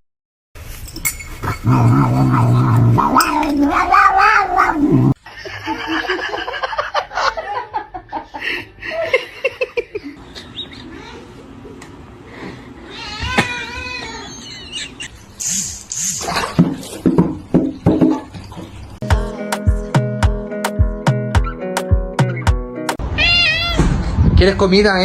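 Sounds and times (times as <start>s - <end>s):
cat meowing: 3.1s - 5.0s, 23.0s - 24.0s.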